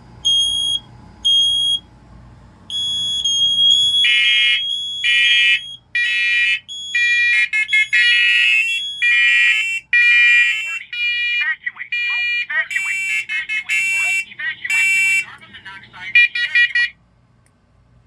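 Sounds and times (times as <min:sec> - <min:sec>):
high smoke alarm beeps: 0:00.2 - 0:01.9, 0:02.7 - 0:15.3, 0:16.2 - 0:16.9
lower smoke alarm beeps: 0:00.2 - 0:01.9, 0:02.7 - 0:15.3.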